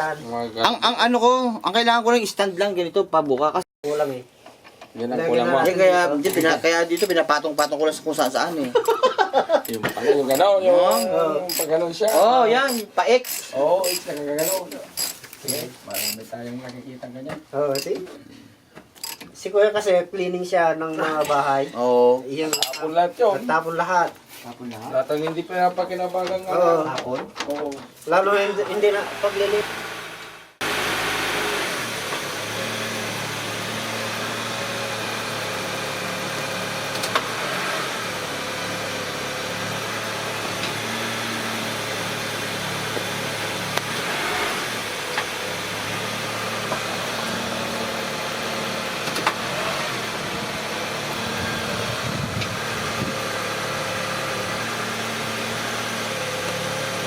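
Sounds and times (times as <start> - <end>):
car engine running: 29.0 - 57.0.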